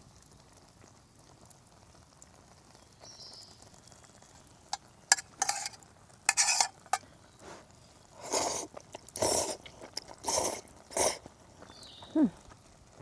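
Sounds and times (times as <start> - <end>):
utensil clicking on bowl: 5.1 - 6.8
utensil scraping a bowl: 5.1 - 7.0, 8.2 - 11.2.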